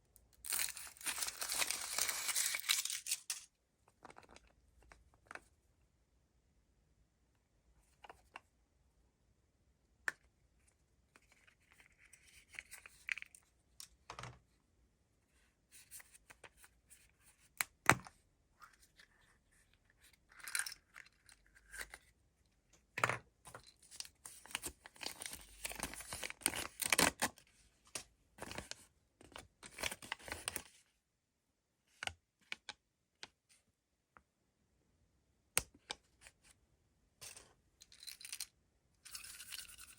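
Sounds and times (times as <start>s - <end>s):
foil wrapper crinkling: 0.5s - 3.4s.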